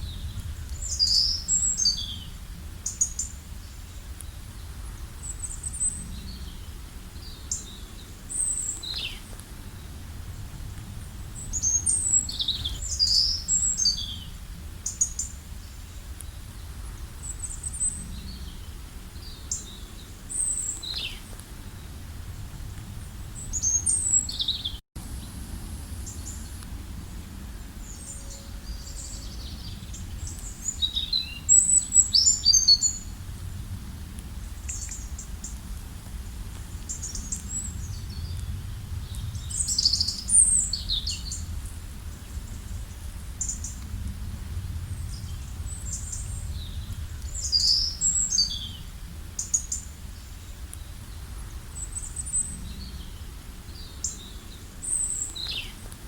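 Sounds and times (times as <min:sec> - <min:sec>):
songbirds chirping and singing: 0:00.0 - 0:10.0, 0:11.4 - 0:21.3, 0:27.8 - 0:33.1
steady low rumble: 0:00.0 - 0:56.0.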